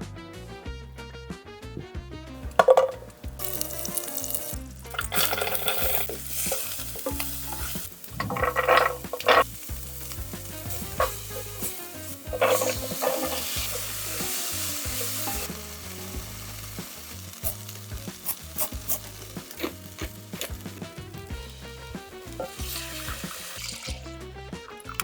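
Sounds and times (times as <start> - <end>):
soft background music: 0.0 - 25.0
food sizzling in a pot: 2.4 - 25.0
utensil clinking against pot: 2.6 - 9.6, 10.7 - 15.5.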